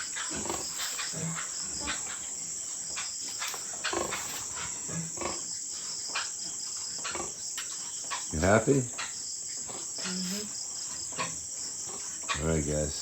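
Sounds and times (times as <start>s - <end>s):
pigs grunting: 0.0s - 2.6s, 3.3s - 5.5s, 7.0s - 7.4s, 11.1s - 13.0s
crickets chirring: 0.0s - 13.0s.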